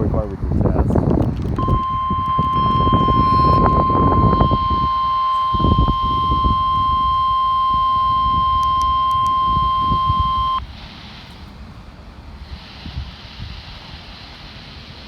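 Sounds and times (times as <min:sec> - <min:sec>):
low background rumble: 0:00.0 - 0:14.8
loud steady alarm tone: 0:01.6 - 0:10.6.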